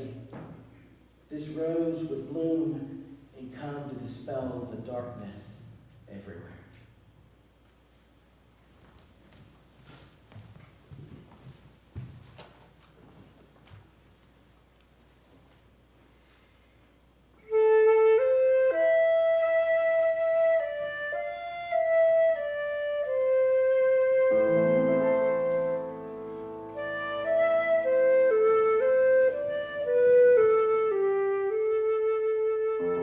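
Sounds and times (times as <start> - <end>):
flute playing slow melody: 17.4 - 33.0
piano accompaniment: 24.2 - 28.1, 32.7 - 33.0.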